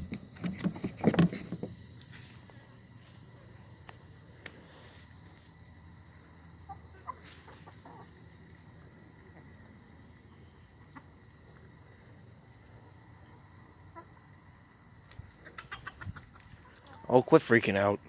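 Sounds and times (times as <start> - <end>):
chickens clucking: 6.3 - 9.6, 10.2 - 11.8, 13.0 - 17.2.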